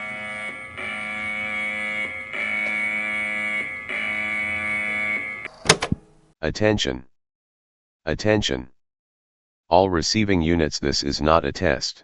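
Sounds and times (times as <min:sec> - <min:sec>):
harsh buzzing alarm tone: 0:00.0 - 0:05.7.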